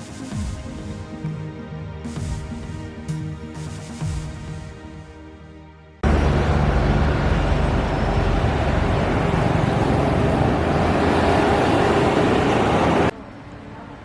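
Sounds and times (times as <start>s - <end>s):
vehicle rumbling: 6.0s - 14.0s.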